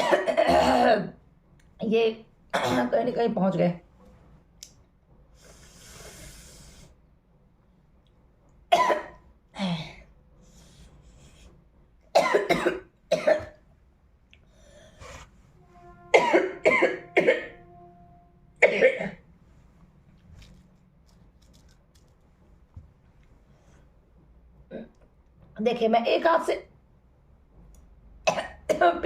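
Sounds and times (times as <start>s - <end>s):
girl coughing: 0.0s - 1.2s, 2.5s - 3.2s, 8.7s - 10.0s, 12.1s - 13.6s, 16.1s - 17.6s, 18.6s - 19.2s, 28.3s - 29.0s
soft breathy hiss: 5.3s - 7.0s.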